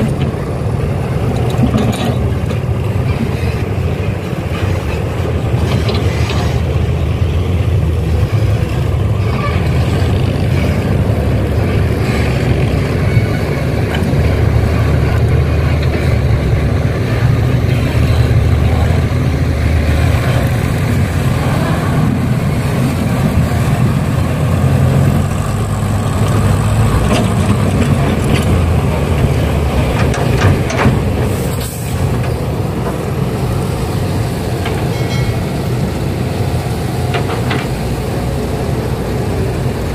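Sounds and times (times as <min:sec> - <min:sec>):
heavy diesel engines rumbling: 0:00.0 - 0:39.9.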